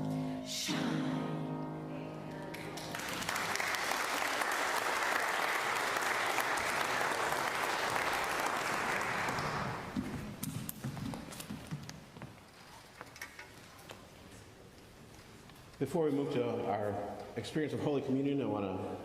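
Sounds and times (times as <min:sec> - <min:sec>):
congregation applauding: 0:02.5 - 0:10.0.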